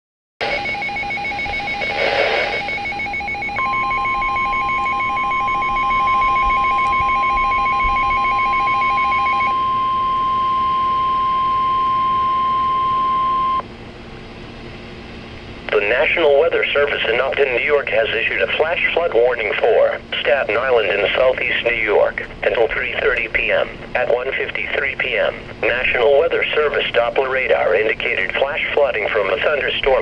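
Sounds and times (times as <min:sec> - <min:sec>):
fast pulsing electronic beep: 0:00.4 - 0:13.6
steady alert tone: 0:00.4 - 0:13.6.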